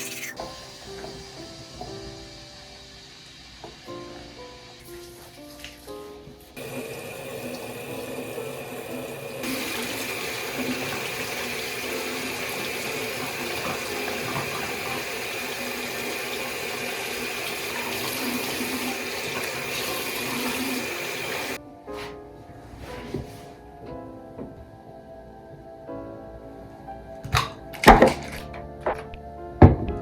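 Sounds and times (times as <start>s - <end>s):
tap water running into sink: 0.0s - 21.6s.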